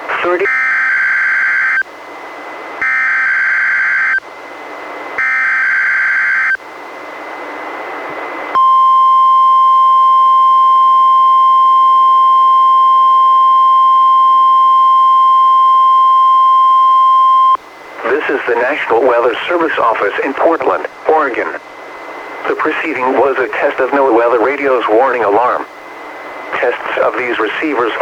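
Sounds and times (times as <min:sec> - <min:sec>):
radio receiver hiss: 0:00.0 - 0:00.5, 0:17.6 - 0:28.0
steady warning alarm tone: 0:00.1 - 0:01.9, 0:02.8 - 0:04.3, 0:05.2 - 0:06.6, 0:08.6 - 0:20.6.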